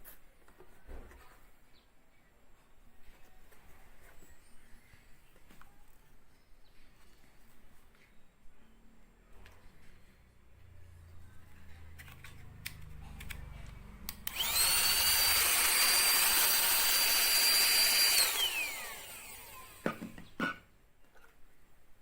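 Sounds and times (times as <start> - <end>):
mini vacuum cleaner whining: 14.1 - 20.6.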